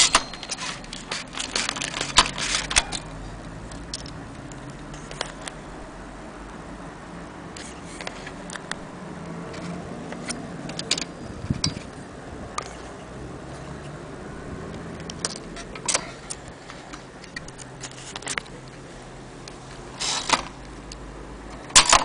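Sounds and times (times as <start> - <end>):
small mechanism clicking: 0.0 - 5.6, 7.6 - 12.0.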